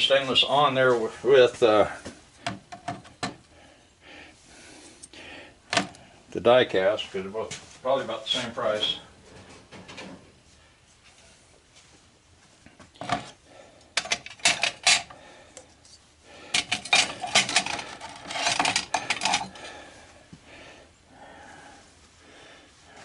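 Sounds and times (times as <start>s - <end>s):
scrap brass clinking: 14.0s - 15.2s, 16.6s - 19.6s.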